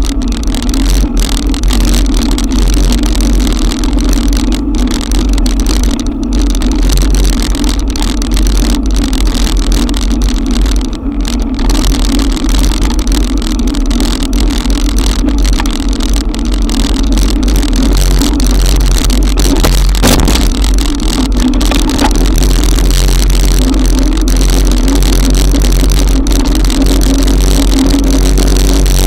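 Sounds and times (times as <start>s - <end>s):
constant low drone: 0.0s - 29.0s
heavy rain: 0.0s - 29.0s
wind on microphone: 0.0s - 29.0s.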